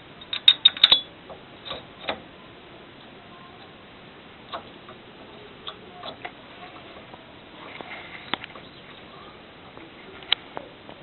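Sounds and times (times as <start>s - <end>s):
faint rustling: 4.5s - 11.0s.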